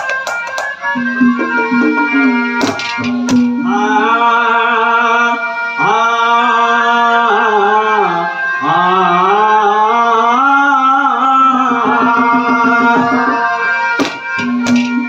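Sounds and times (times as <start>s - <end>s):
sharp knocks: 0.0s - 3.6s, 11.7s - 15.0s
keyboard accompaniment: 0.0s - 5.2s, 11.2s - 15.0s
man singing long notes: 0.8s - 15.0s.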